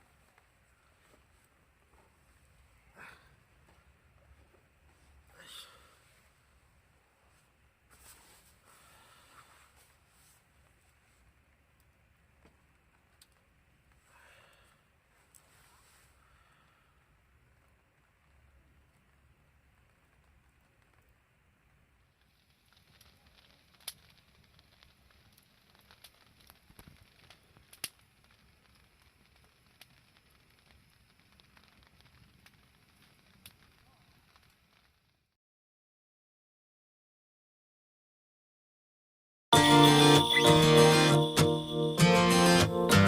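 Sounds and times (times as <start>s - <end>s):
campfire crackling and popping: 10.6s - 15.5s, 16.2s - 35.4s.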